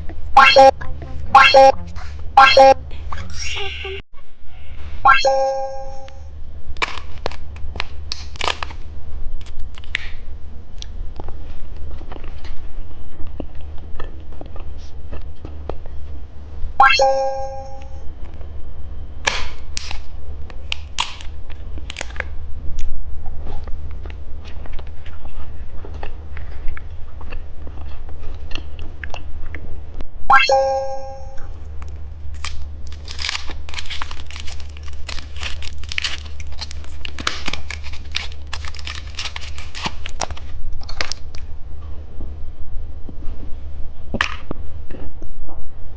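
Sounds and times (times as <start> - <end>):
brief ringing tone: 5.1 - 6.2, 16.8 - 18.0, 30.3 - 31.4
hard candy crunching: 32.4 - 41.2
plastic wrappers crinkling and tearing: 32.4 - 41.4.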